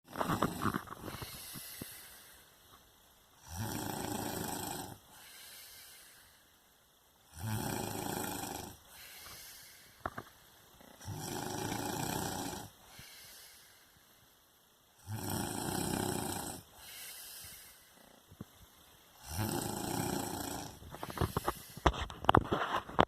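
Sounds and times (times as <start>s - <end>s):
person snoring: 0.1s - 2.5s, 3.4s - 6.4s, 7.3s - 10.0s, 10.8s - 13.8s, 15.0s - 18.3s, 19.2s - 21.9s
soft breath: 0.2s - 2.8s, 5.0s - 6.7s, 8.8s - 11.0s, 12.3s - 14.4s, 16.6s - 18.4s, 20.5s - 22.8s.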